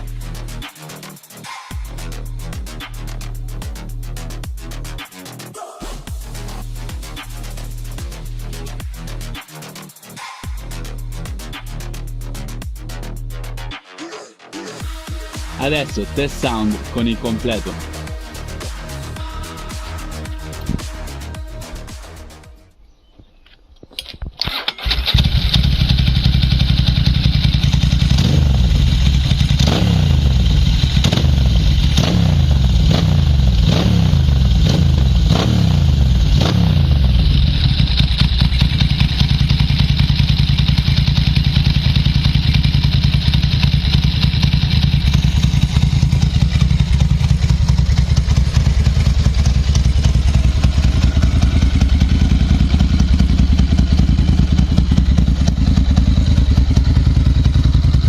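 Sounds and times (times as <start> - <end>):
motorcycle engine revving and idling: 14.8 - 22.5, 24.5 - 58.0.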